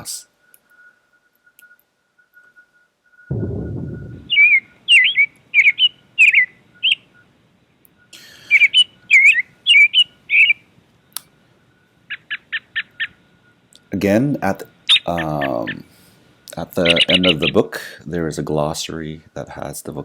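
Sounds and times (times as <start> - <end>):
recorded birdsong chirps: 0.0 - 19.7
low rushing noise: 3.3 - 4.5.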